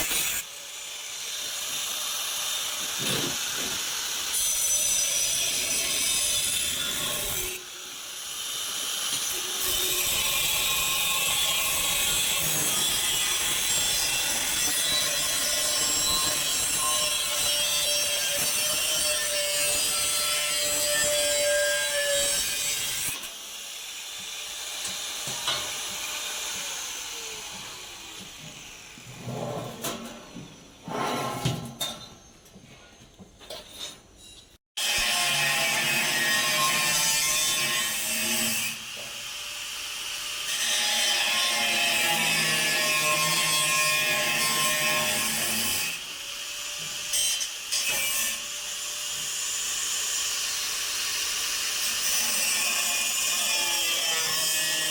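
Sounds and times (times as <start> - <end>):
angle grinder cutting metal: 0.0 - 29.1, 34.8 - 54.9.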